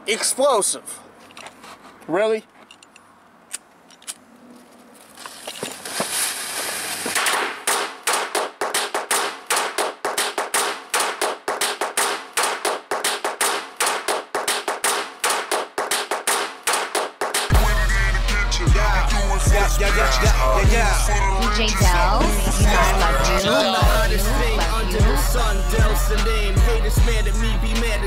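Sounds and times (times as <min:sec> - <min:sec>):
firecrackers banging: 0:05.5 - 0:17.5
firecracker fuse hiss: 0:05.7 - 0:07.6
music with heavy beat: 0:07.7 - 0:28.0.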